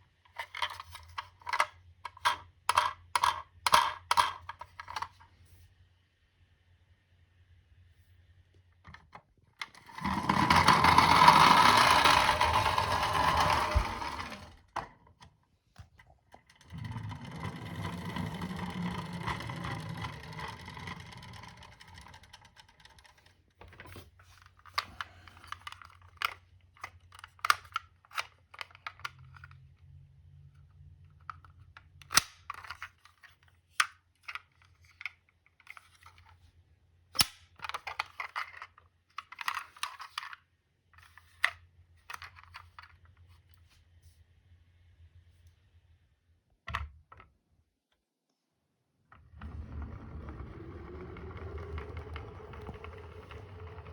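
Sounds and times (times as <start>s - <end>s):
toy cars clicking handled: 0.3s - 5.2s, 17.4s - 23.4s, 24.4s - 29.7s, 31.2s - 36.3s, 37.2s - 40.4s
toy car rolling down slope: 9.6s - 14.8s, 16.4s - 23.4s, 49.2s - 53.9s.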